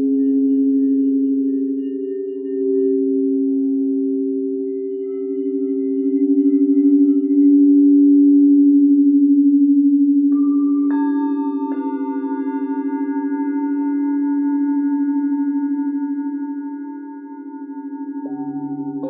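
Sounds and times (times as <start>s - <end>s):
singing bowl wavering hum: 0.0s - 19.0s
singing bowl struck ringing: 4.8s - 19.0s.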